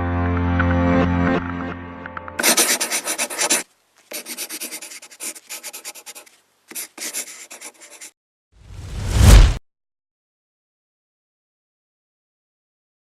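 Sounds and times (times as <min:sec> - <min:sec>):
rapid scraping strokes: 0:02.4 - 0:08.1.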